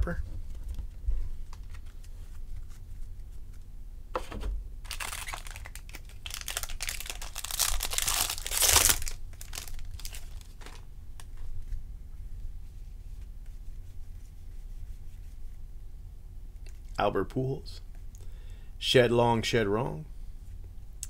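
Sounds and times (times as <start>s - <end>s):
wrapper crinkling and tearing: 4.8s - 10.8s.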